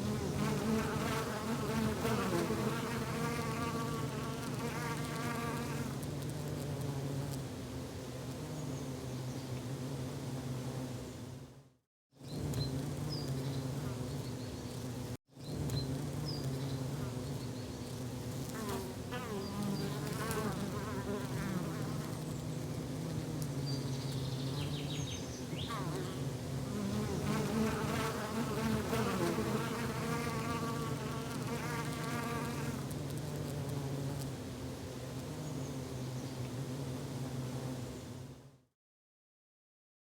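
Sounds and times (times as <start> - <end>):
insects buzzing: 0.0 - 11.4, 12.2 - 38.4.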